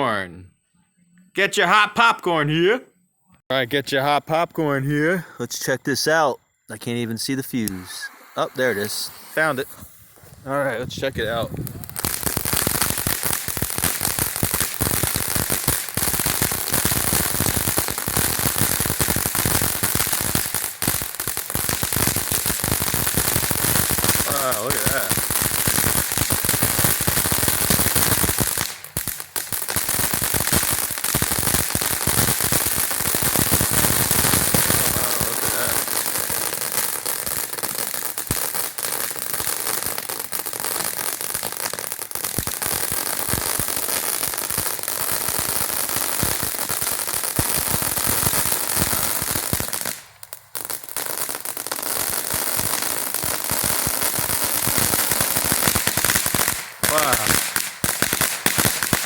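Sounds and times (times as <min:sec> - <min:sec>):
firework fountain crackling: 0:06.8 - 0:59.0
hiss of sparks: 0:07.6 - 0:10.5, 0:11.6 - 0:43.8, 0:52.6 - 0:59.0.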